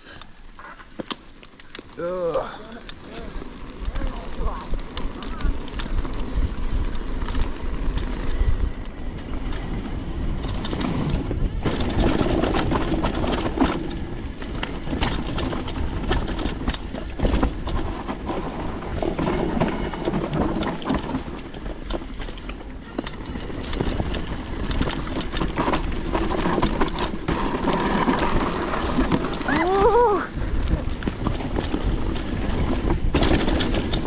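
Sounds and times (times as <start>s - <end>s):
bike rattling over bumps: 0.0s - 34.0s
bike tyres on dirt: 0.0s - 34.0s.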